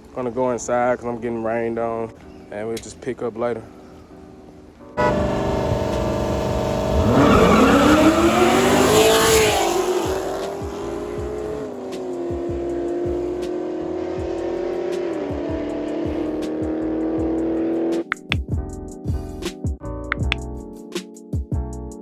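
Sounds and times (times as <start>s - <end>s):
car engine revving: 5.0s - 18.0s.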